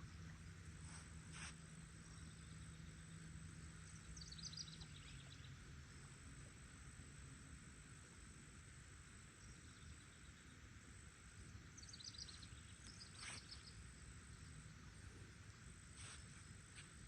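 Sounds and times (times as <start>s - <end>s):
high insect hum: 0.0s - 17.0s
bird chirping: 11.8s - 13.8s.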